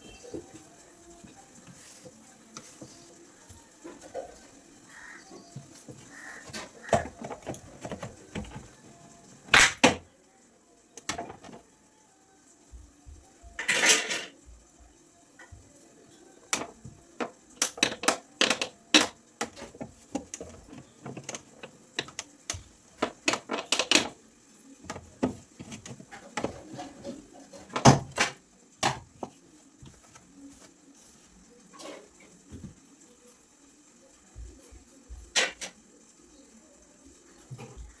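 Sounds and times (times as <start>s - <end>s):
household items knocking and clattering: 5.6s - 8.8s, 11.0s - 11.6s, 16.5s - 24.2s, 24.8s - 30.2s.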